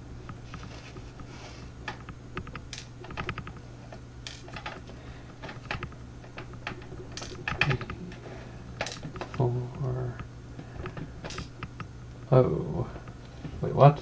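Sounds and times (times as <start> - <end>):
metallic clicks of lock parts: 5.4 - 7.9.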